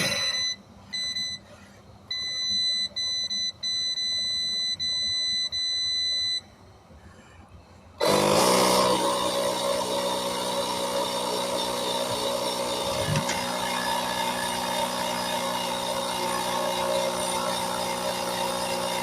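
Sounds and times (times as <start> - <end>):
air compressor motor buzzing: 0.0 - 0.5, 8.0 - 19.0.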